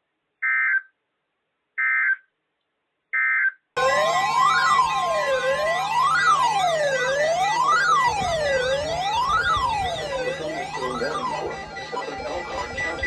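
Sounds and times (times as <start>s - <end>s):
electronic siren wailing: 3.8s - 13.0s
low hum: 3.8s - 13.0s
steady high tone: 3.8s - 13.0s.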